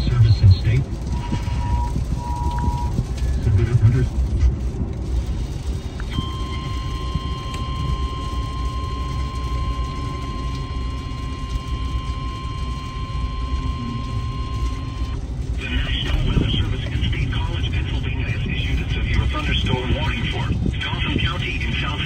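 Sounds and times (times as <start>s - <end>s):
constant low rumble: 0.0s - 22.0s
two-tone alert tone: 6.1s - 15.2s.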